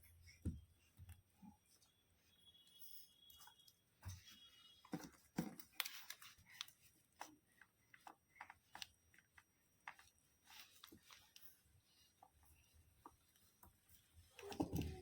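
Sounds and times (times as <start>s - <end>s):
faint small clicks and taps: 3.3s - 15.0s.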